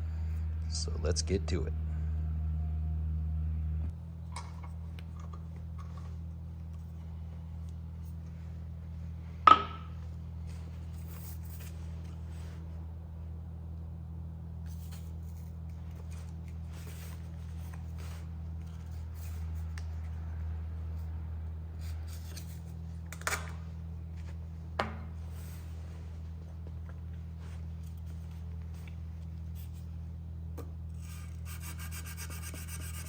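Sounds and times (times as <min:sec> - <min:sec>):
steady low hum: 0:00.0 - 0:33.0
sandpaper scratching on steel: 0:31.0 - 0:33.0.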